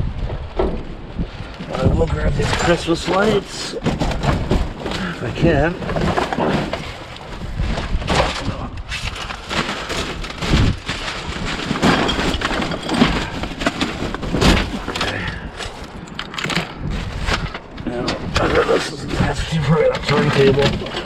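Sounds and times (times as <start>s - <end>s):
junk rustling and clattering: 0.0s - 21.0s
wind buffeting microphone: 0.0s - 21.0s.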